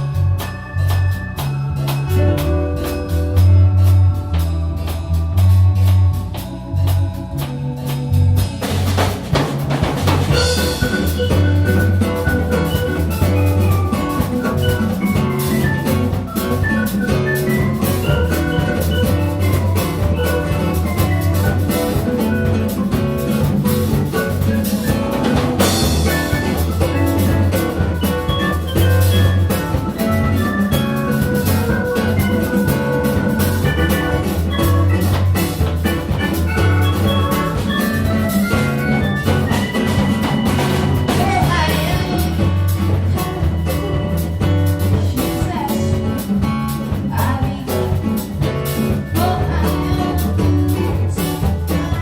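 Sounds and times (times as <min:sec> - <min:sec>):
bass: 0:00.0 - 0:52.0
drum kit beat: 0:00.0 - 0:52.0
bright melodic lines: 0:10.2 - 0:46.4.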